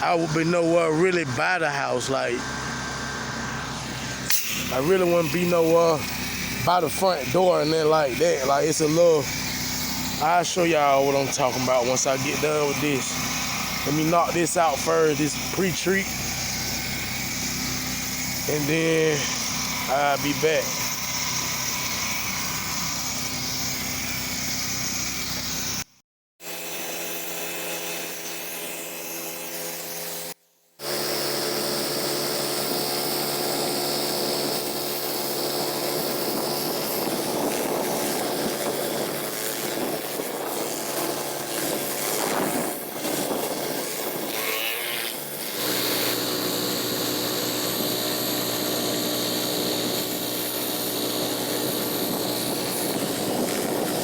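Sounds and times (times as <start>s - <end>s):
pressure washer engine and pump: 0.0s - 25.9s, 26.5s - 54.0s
hiss of spraying water: 4.2s - 16.0s.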